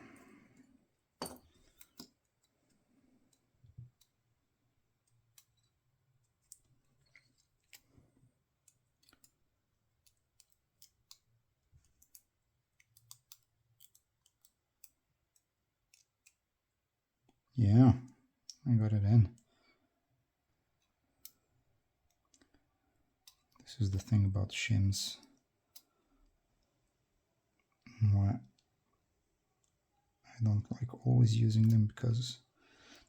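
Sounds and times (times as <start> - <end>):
padlock handled in hand: 8.6 - 16.4.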